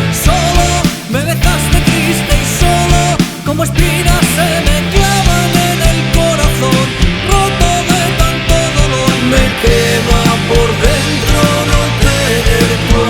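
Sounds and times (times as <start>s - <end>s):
instrumental rock music: 0.0s - 13.0s
steady drum beat: 0.0s - 13.0s
pitch-bending lead melody: 3.8s - 13.0s.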